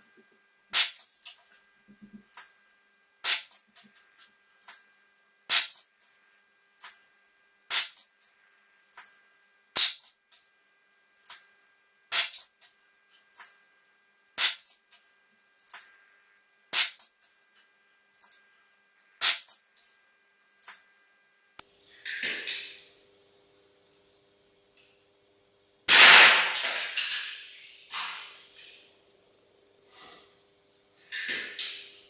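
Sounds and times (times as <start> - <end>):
air pistol shots: 3.3 - 3.6, 9.8 - 10.1, 16.8 - 17.1, 19.2 - 19.6, 25.9 - 26.8.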